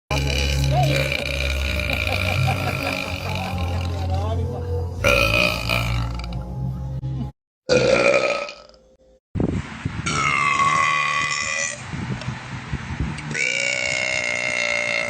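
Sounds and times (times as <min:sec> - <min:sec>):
woman belching: 0:00.1 - 0:04.2, 0:05.0 - 0:06.4, 0:07.7 - 0:08.8, 0:10.1 - 0:11.8, 0:13.3 - 0:15.0.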